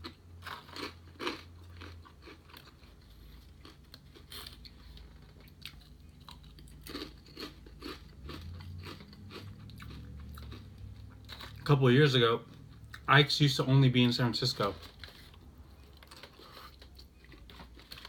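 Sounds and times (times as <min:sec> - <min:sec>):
person chewing food: 0:00.0 - 0:11.7, 0:12.4 - 0:13.1, 0:14.8 - 0:18.0.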